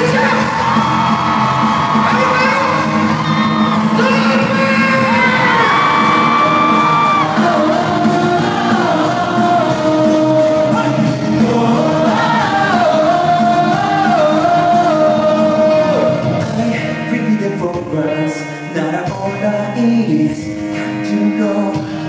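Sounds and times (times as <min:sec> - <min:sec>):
crowd shouting: 0:00.0 - 0:16.3
live pop-rock band: 0:00.0 - 0:22.0.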